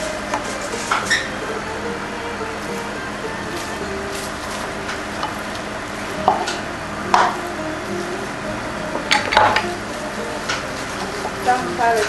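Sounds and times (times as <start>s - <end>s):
steady background hum: 0.0s - 12.0s
utensils clinking against a bowl: 8.9s - 12.0s.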